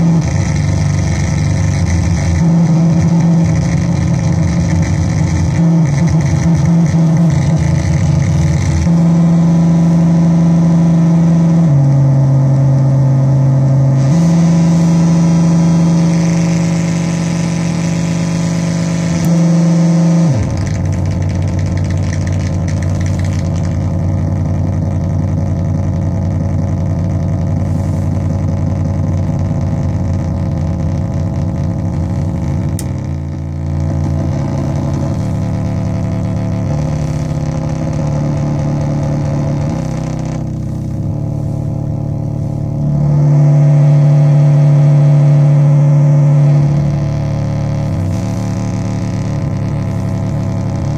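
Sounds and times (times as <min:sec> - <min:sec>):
synth buzzing drone: 0:00.0 - 0:50.9.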